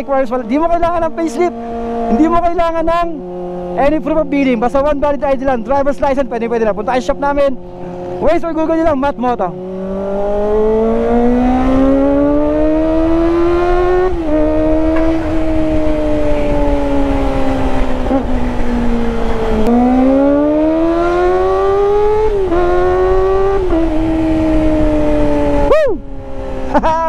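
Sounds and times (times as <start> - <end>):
motorcycle engine revving: 0.0 - 27.0.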